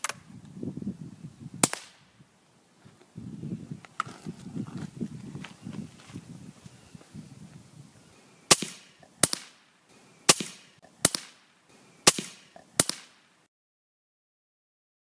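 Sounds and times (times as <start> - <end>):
suppressed rifle shots: 8.5 - 9.6, 10.3 - 13.3.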